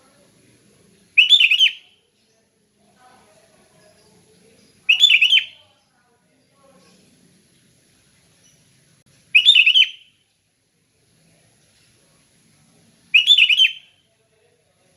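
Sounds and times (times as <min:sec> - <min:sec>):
bird singing quick notes: 0:01.2 - 0:01.8, 0:04.9 - 0:05.5, 0:09.4 - 0:10.0.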